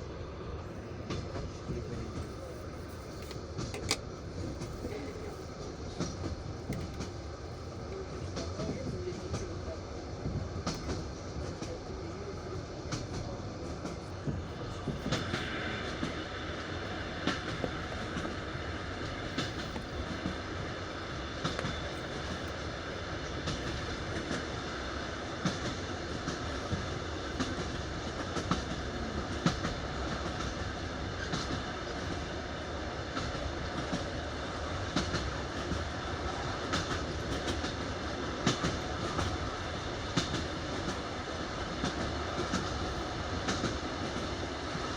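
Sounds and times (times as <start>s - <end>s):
train carriage rumbling: 0.0s - 44.9s
wheels clicking over rail joints: 1.1s - 7.2s.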